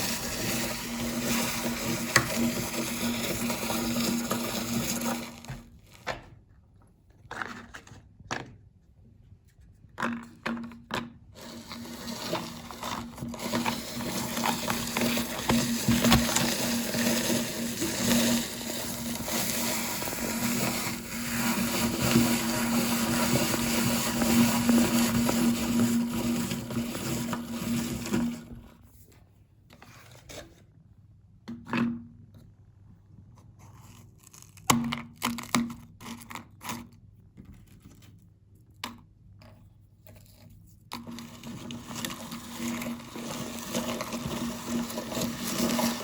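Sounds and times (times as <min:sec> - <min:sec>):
meat grinder crunching cookies: 0:00.0 - 0:06.1, 0:11.1 - 0:28.8, 0:40.9 - 0:46.0.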